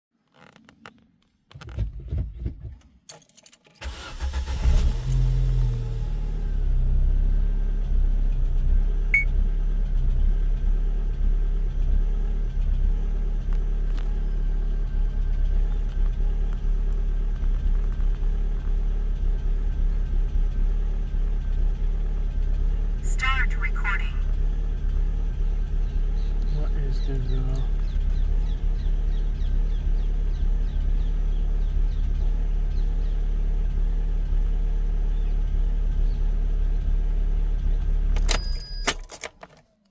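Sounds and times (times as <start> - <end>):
car engine cranking and starting: 0.2 - 39.9
car engine idling roughly: 7.2 - 38.2.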